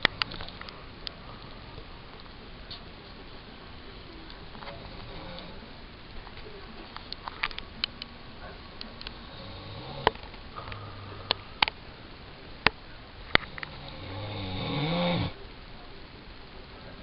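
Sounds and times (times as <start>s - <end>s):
man snoring: 9.2s - 10.1s, 13.7s - 15.4s.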